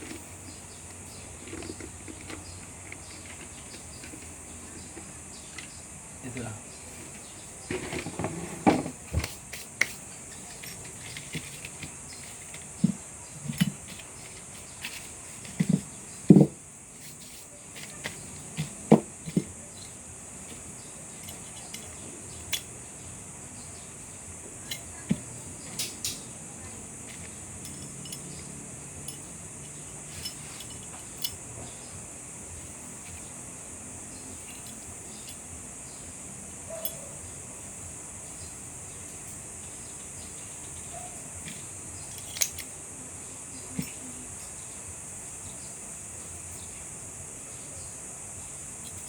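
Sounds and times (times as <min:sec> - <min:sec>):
high-pitched hiss: 0:00.0 - 0:49.0
pistol parts clicking and knocking: 0:42.1 - 0:42.7.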